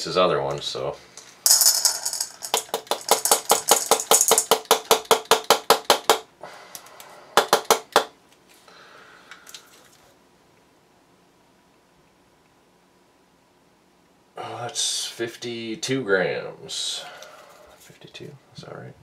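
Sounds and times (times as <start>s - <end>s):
rapid hard ringing clicks: 1.5s - 6.2s.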